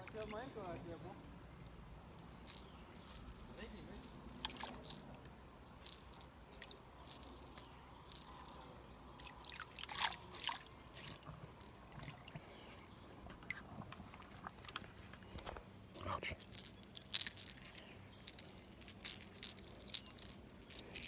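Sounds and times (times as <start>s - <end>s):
creek water trickling: 0.0s - 21.0s
small splashes and knocks: 2.6s - 15.0s.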